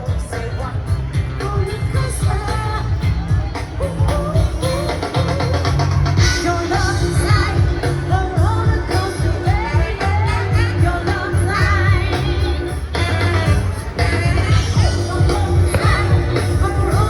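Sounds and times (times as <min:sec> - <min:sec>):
pop song with vocals: 0:00.0 - 0:17.0.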